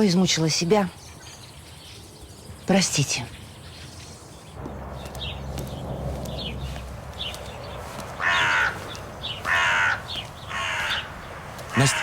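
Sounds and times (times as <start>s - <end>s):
small birds chirping faintly: 0.0s - 12.0s
crow cawing: 7.4s - 12.0s.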